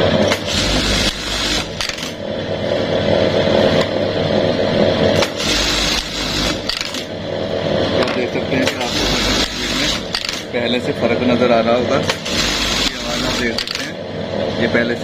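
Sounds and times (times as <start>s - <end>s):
sewing machine mechanical whir: 0.0s - 2.4s, 5.0s - 7.2s, 8.4s - 14.0s.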